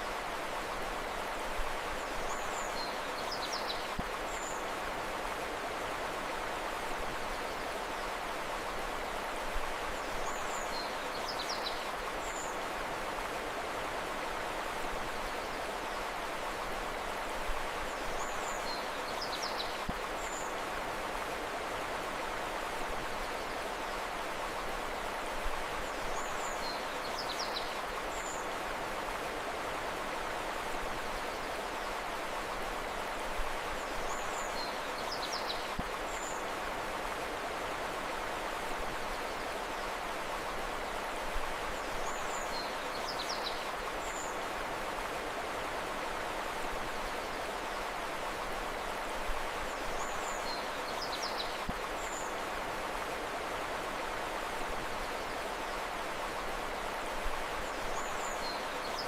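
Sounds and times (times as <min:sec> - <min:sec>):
river water rushing: 0:00.0 - 0:59.0.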